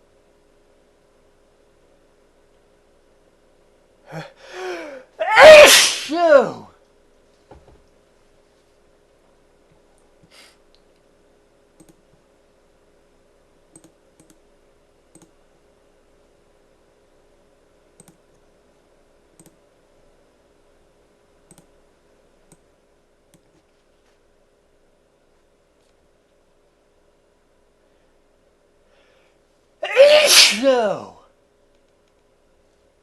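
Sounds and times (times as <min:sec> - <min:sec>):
faint steady hum: 0:00.0 - 0:33.0
faint irregular clicks: 0:11.8 - 0:12.2, 0:13.7 - 0:14.4, 0:15.1 - 0:15.4, 0:18.0 - 0:18.5, 0:19.3 - 0:19.6, 0:21.4 - 0:21.8, 0:23.3 - 0:24.2.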